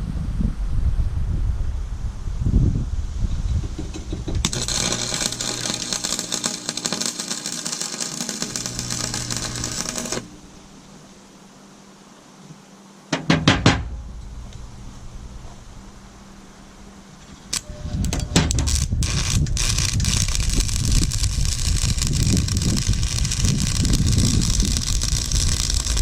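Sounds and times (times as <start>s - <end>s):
welding arc crackling: 3.8s - 11.1s, 14.0s - 26.0s
sharp knocks: 13.1s - 14.6s.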